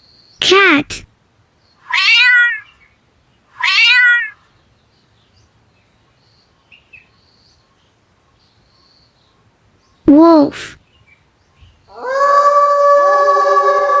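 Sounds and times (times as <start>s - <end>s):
cat meowing: 1.9s - 2.7s, 3.6s - 4.4s.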